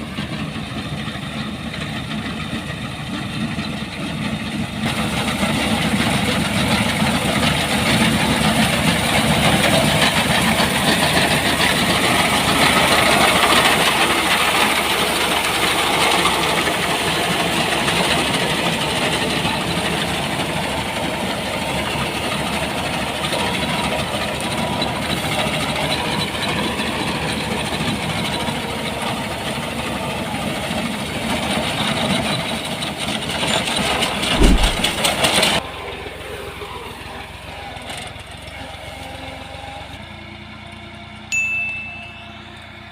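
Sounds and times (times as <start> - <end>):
farm machinery engine running: 0.0 - 42.9
low thump: 34.4 - 35.1.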